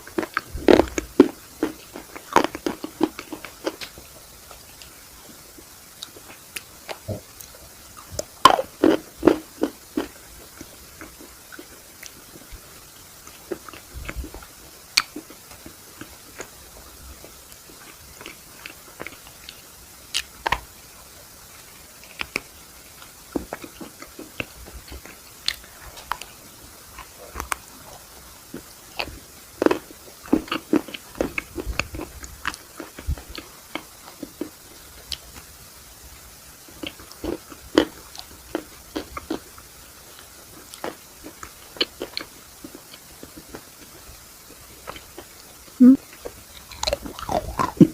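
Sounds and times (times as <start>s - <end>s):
person chewing: 0.0s - 4.9s, 5.9s - 12.4s, 22.0s - 35.3s, 36.7s - 44.0s, 44.8s - 47.9s.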